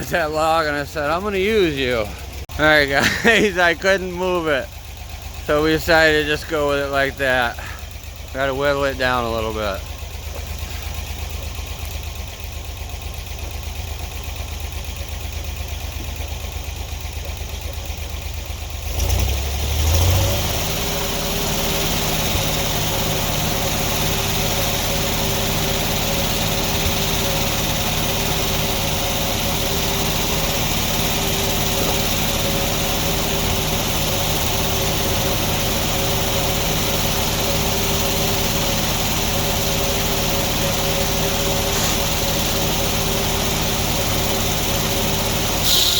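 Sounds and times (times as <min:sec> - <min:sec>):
sawmill engine running: 0:00.0 - 0:45.9
saw cutting through log: 0:18.9 - 0:45.9.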